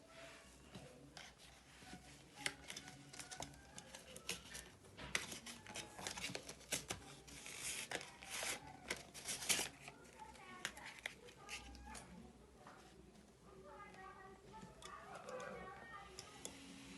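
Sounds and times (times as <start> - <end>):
paper and plastic rustling: 0.2 - 12.9.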